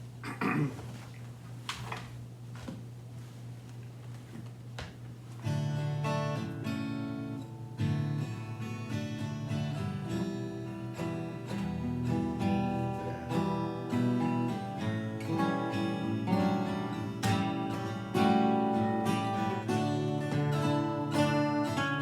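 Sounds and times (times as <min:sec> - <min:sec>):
acoustic guitar strumming chords: 0:05.4 - 0:22.0.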